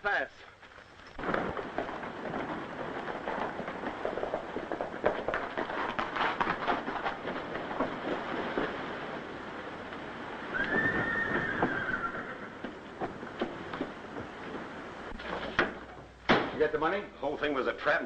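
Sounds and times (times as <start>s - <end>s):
horses galloping: 0.0s - 18.0s
horse whinnying: 10.5s - 12.6s.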